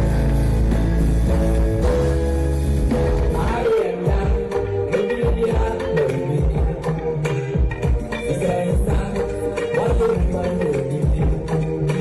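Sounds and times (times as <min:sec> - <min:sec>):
music with heavy bass beat: 0:00.0 - 0:12.0.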